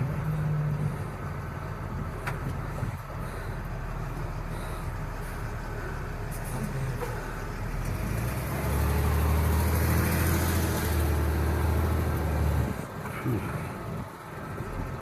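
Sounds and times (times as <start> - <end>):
road noise: 0.0 - 15.0
truck engine hum: 0.0 - 15.0.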